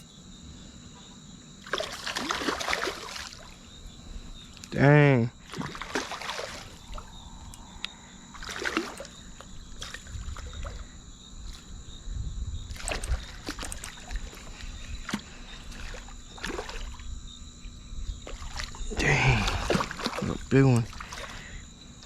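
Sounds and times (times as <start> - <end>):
wind rumbling on microphone: 9.2 - 20.6.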